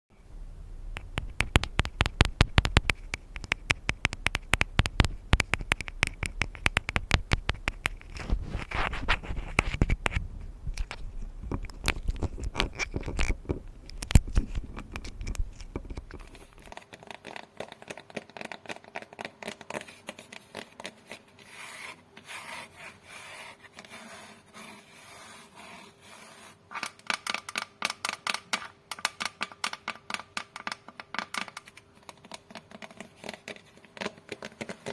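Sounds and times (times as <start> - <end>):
scratching and rubbing on glass: 7.9 - 10.2, 19.7 - 27.0.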